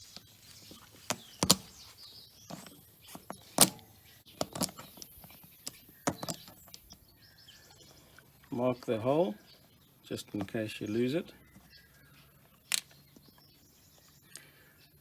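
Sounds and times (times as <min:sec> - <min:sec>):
hand tool clicks and knocks: 0:02.5 - 0:03.8, 0:04.4 - 0:07.0.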